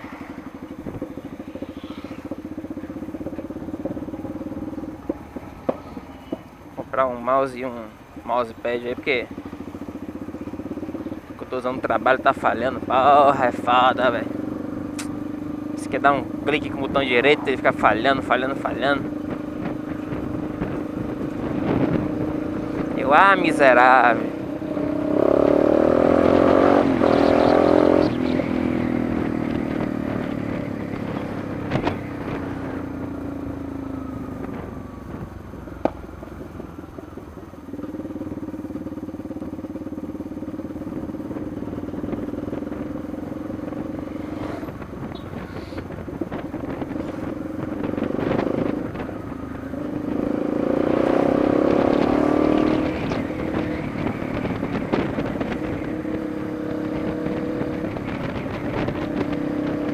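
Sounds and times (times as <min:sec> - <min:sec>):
motorcycle engine revving: 0:00.0 - 0:59.9
sharp clicks: 0:14.9 - 0:15.2.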